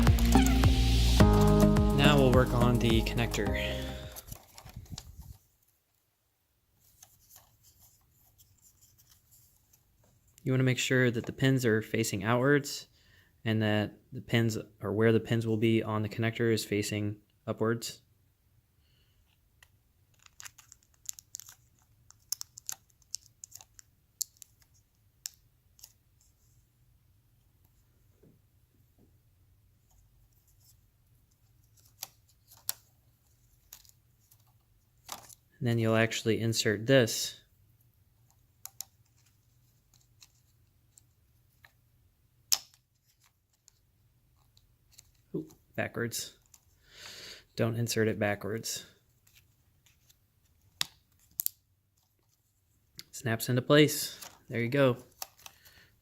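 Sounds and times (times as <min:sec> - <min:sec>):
plastic connector clicks and crinkles: 0:04.1 - 0:05.4, 0:19.6 - 0:26.0, 0:31.4 - 0:35.4, 0:38.3 - 0:41.8, 0:42.5 - 0:43.8, 0:49.2 - 0:52.4, 0:54.2 - 0:54.5, 0:55.1 - 0:55.7.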